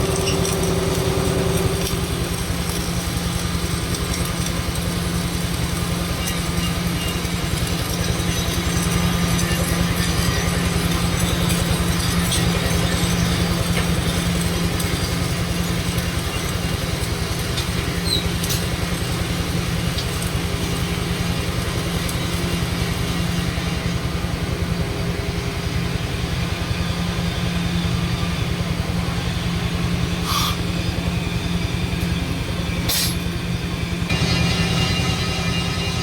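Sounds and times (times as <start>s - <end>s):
welding crackle: 0.0s - 23.6s
arc welding drone: 0.0s - 36.0s.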